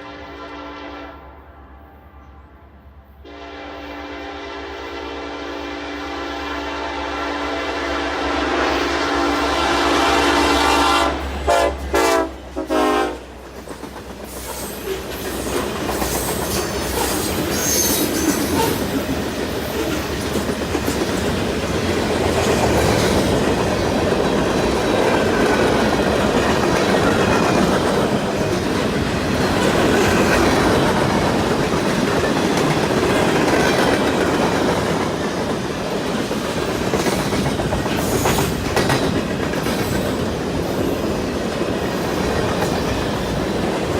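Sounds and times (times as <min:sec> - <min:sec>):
locomotive horn short blasts: 0:03.2 - 0:13.3.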